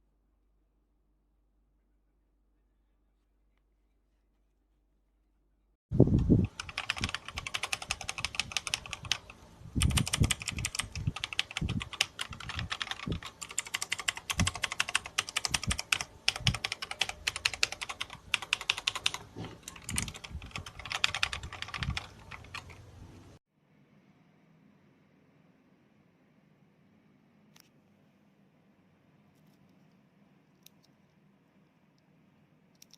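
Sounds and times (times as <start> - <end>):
mechanical keyboard typing: 6.1 - 22.8.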